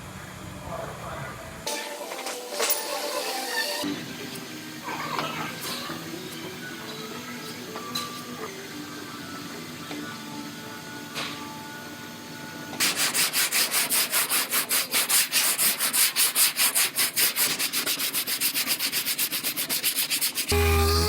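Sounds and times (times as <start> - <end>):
sanding block strokes: 12.8 - 21.0.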